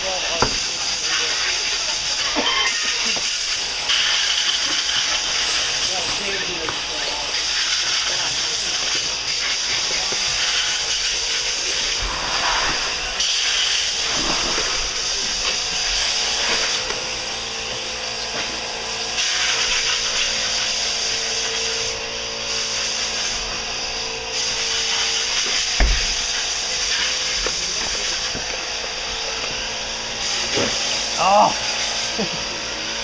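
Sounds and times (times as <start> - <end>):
knock: 0.4 - 0.7, 25.8 - 26.2.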